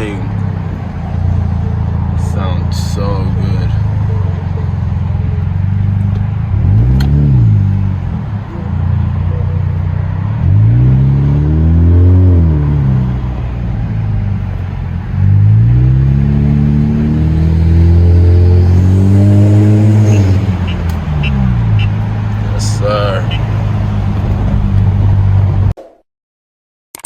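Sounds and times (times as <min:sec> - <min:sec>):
car engine accelerating: 0:00.0 - 0:25.7.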